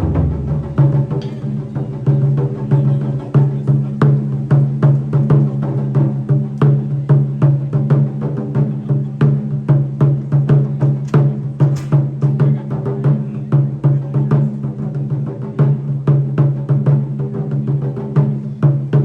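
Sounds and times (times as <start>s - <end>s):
drum stick strikes: 0.0s - 2.2s
deep drum pulse: 0.0s - 8.1s.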